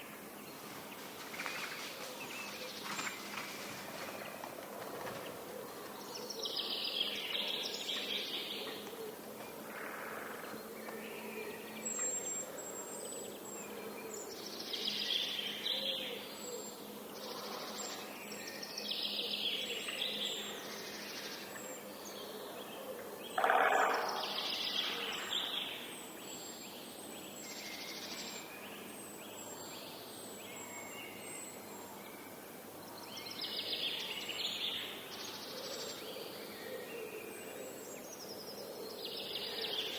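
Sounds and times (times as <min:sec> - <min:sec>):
background hiss: 0:00.0 - 0:22.2
birds singing: 0:00.0 - 0:39.9.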